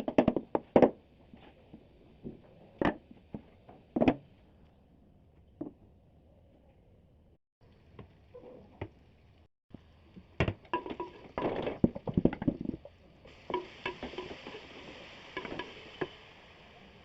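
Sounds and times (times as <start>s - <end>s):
food sizzling: 7.6s - 17.0s
metal utensils clattering on pot: 10.7s - 12.8s.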